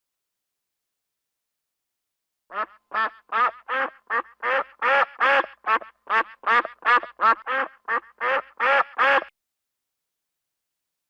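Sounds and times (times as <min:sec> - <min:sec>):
duck quacking: 0:02.5 - 0:09.3.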